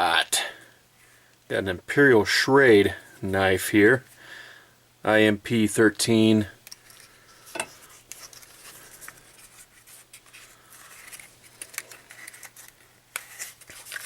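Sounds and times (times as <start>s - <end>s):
packaging being opened: 8.0s - 14.0s.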